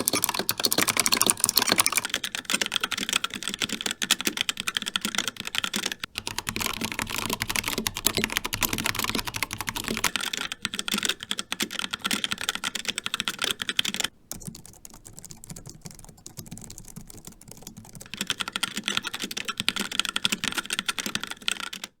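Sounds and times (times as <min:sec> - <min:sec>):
mechanical keyboard key clacks: 0:00.0 - 0:21.9.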